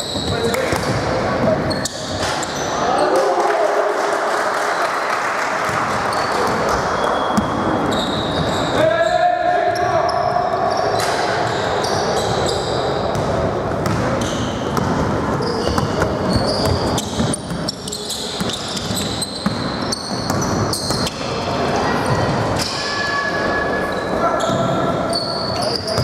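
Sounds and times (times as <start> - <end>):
basketball bouncing on court: 0.0 - 1.7, 5.7 - 8.6, 13.1 - 21.2
sneakers squeaking: 0.0 - 3.1, 5.7 - 26.0
players' voices echoing: 0.0 - 26.0.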